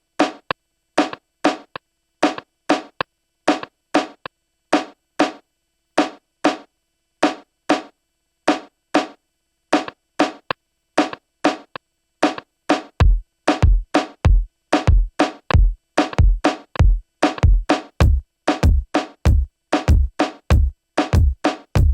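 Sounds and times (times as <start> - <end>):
drum machine pattern: 9.8 - 21.9
deep bass kick: 15.6 - 21.9.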